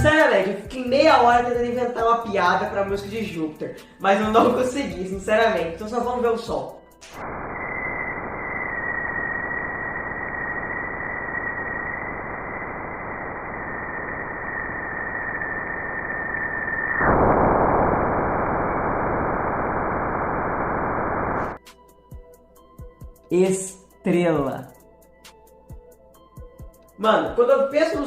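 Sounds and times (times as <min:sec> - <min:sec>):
high whistle-like tone: 0:07.0 - 0:18.4.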